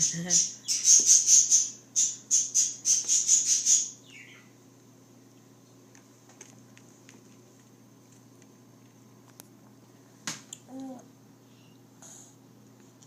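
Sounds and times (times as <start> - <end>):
bird chirping: 0.0 - 4.5.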